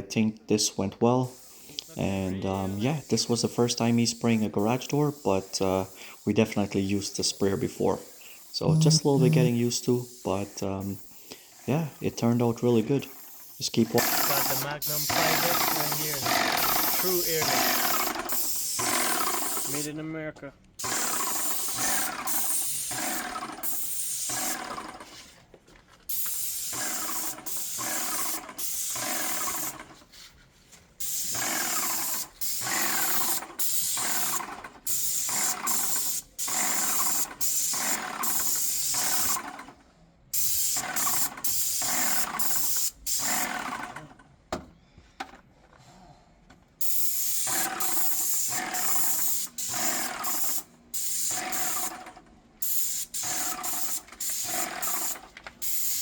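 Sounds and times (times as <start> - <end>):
hiss of spraying paint: 1.3 - 12.4, 13.0 - 19.9, 20.8 - 24.9, 26.1 - 30.0, 31.0 - 39.6, 40.3 - 43.5, 46.8 - 52.0, 52.6 - 56.0
paint sprayer pump running: 13.0 - 19.9, 20.8 - 25.3, 26.1 - 30.0, 31.0 - 39.7, 40.4 - 44.2, 47.1 - 56.0.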